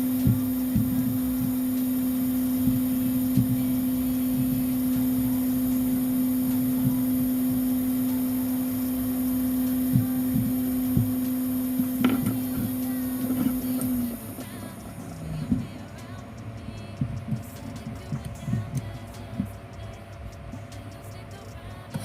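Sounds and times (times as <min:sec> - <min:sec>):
hot air gun humming: 0:00.0 - 0:22.0.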